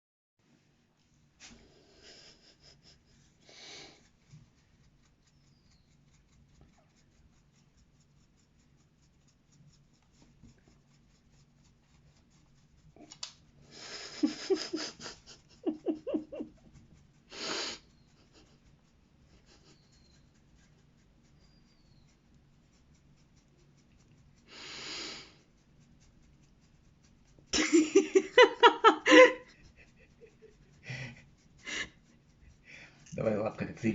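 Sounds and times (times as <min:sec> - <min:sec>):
faint squeaky sounds: 0:05.2 - 0:07.1, 0:19.5 - 0:23.2.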